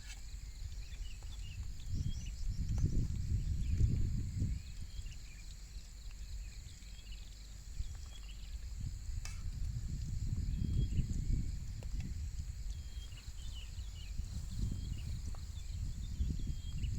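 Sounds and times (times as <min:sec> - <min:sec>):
high insect drone: 0:00.0 - 0:16.9
insect chirps: 0:00.0 - 0:16.9
wind buffeting microphone: 0:00.4 - 0:06.8, 0:07.6 - 0:16.9.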